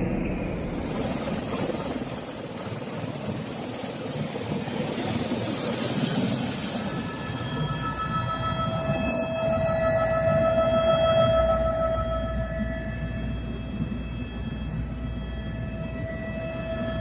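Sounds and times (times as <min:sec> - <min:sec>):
helicopter running: 0:00.0 - 0:09.4.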